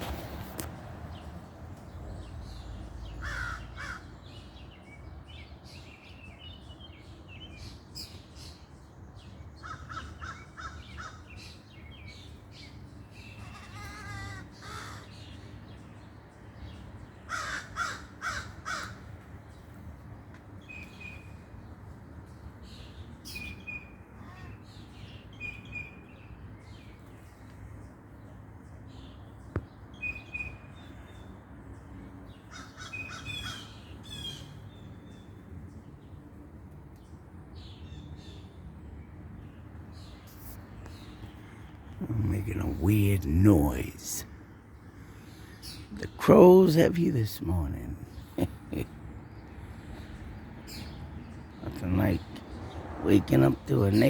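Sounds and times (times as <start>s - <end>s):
crow cawing and rattling: 3.2s - 4.1s, 9.6s - 11.3s, 13.4s - 15.2s, 17.3s - 19.1s, 32.5s - 33.7s.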